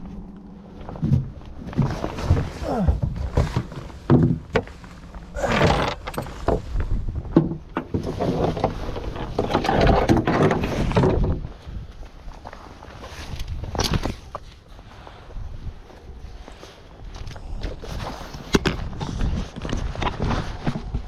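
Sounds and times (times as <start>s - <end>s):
scraping and rustling: 0.0s - 21.0s
knocks and thumps: 0.9s - 11.4s.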